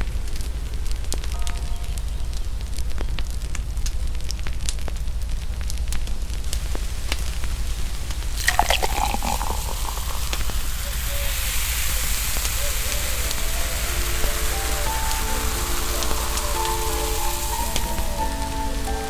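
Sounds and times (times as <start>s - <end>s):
fireplace crackling and popping: 0.0s - 19.0s
liquid pouring and splashing: 8.4s - 12.4s.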